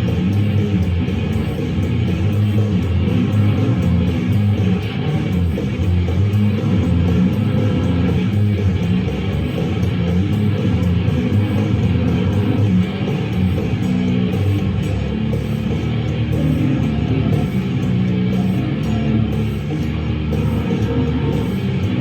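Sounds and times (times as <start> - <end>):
live metal with distorted guitar: 0.0 - 22.0.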